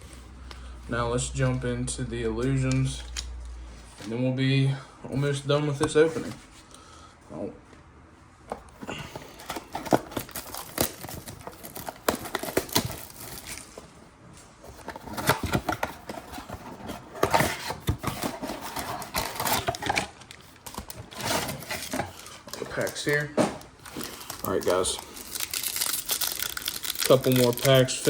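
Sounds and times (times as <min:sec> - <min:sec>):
foil wrappers crinkling and tearing: 0:08.9 - 0:13.8, 0:17.4 - 0:28.0
cards being handled: 0:14.7 - 0:28.0.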